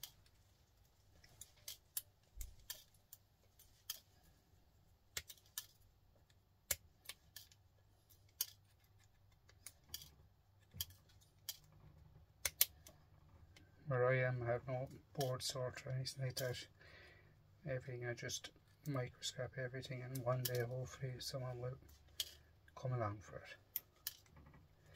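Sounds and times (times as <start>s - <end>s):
small metal pin clicks: 1.3s - 3.0s, 5.2s - 5.8s, 12.4s - 13.6s.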